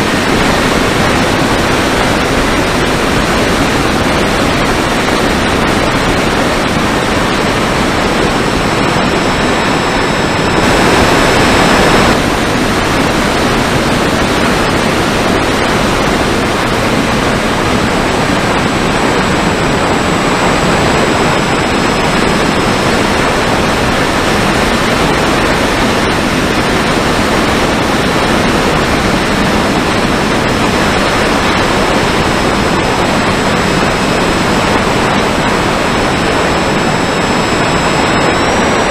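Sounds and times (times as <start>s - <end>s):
faint high motor whine: 0.0s - 38.9s
propeller noise: 0.0s - 38.9s
wind rush: 0.0s - 38.9s.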